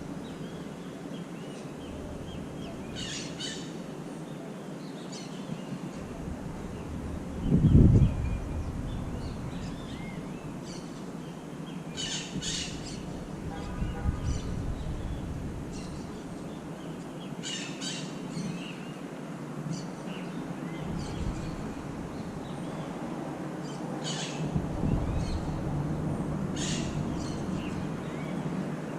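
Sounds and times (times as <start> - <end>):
loud low rumble: 1.8 - 3.4, 5.9 - 11.0, 20.6 - 23.0.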